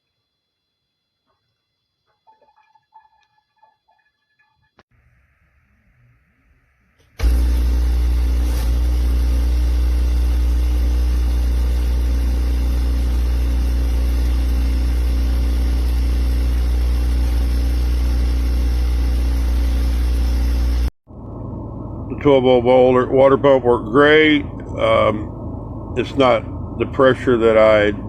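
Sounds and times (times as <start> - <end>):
water pump humming: 7.2 - 28.0.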